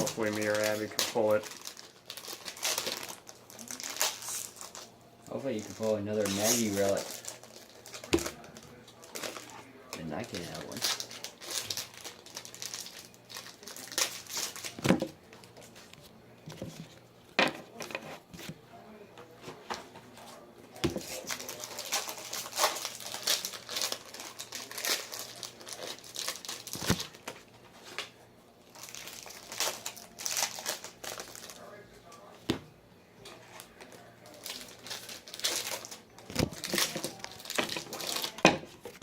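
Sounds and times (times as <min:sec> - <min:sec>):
card pack wrappers crinkling: 0:00.0 - 0:15.8, 0:20.9 - 0:28.1, 0:28.7 - 0:32.2, 0:33.3 - 0:39.0.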